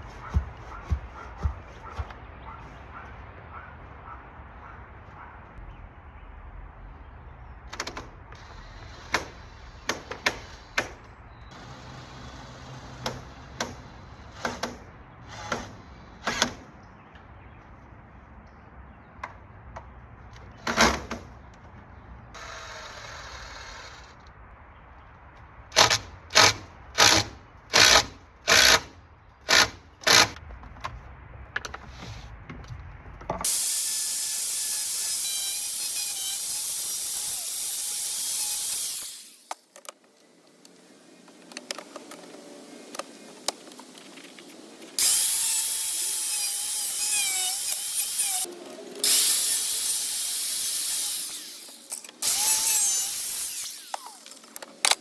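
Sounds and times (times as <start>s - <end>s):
sharp knocks and taps: 0.0s - 2.2s.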